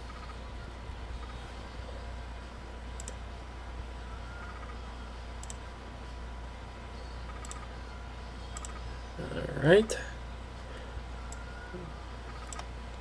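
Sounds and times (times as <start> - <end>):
steady low hum: 0.0 - 13.0
computer mouse clicking: 3.0 - 3.2, 4.5 - 4.8, 5.4 - 5.6, 7.2 - 7.7, 8.5 - 8.8, 12.3 - 13.0.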